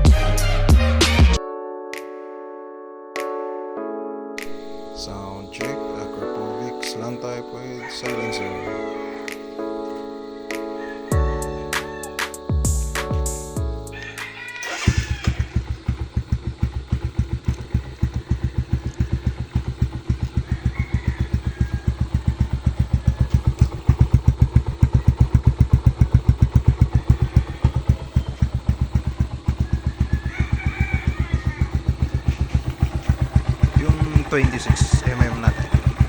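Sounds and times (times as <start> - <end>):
motorcycle engine idling: 10.8 - 36.0.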